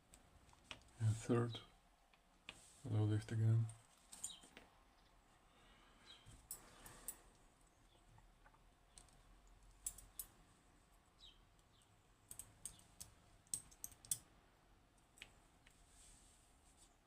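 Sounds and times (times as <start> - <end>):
sharp metallic clicks: 12.3 - 14.3.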